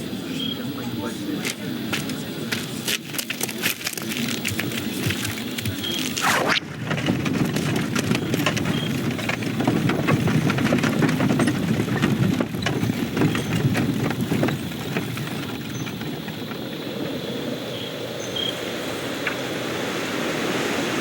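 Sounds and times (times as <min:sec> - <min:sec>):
sharp crackles and ticks: 0:01.4 - 0:16.2.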